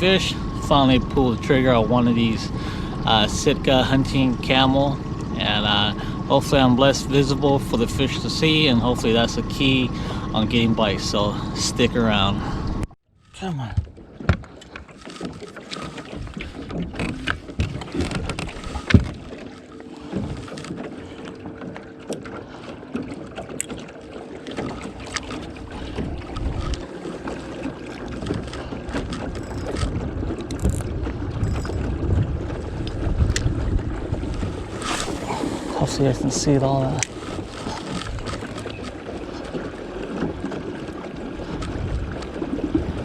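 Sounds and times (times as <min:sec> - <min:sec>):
low rumble: 0:00.0 - 0:13.0, 0:29.4 - 0:39.3
wind buffeting microphone: 0:00.0 - 0:13.0, 0:25.3 - 0:26.9, 0:28.2 - 0:43.0.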